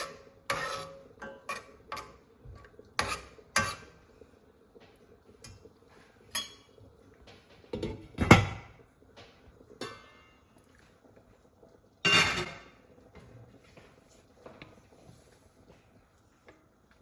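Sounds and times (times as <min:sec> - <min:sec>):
kitchen utensils knocking and clinking: 0:12.0 - 0:12.8.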